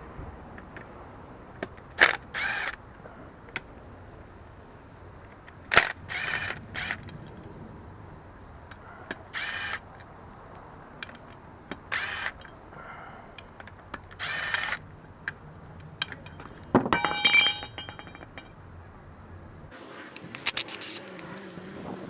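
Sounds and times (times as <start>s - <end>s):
metallic clatter with ringing: 11.0s - 11.4s, 16.0s - 18.6s
power tool undoing bolts: 11.9s - 12.5s, 14.2s - 14.8s.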